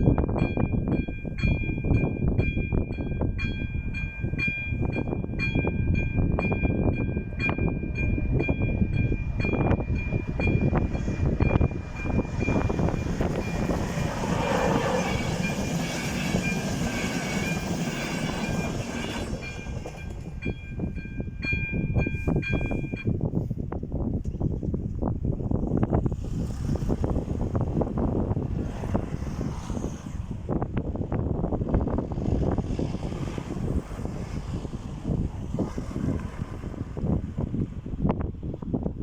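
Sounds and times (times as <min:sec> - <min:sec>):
level crossing warning bell: 0:00.0 - 0:23.2
train rumble and wheel noise: 0:00.0 - 0:39.0.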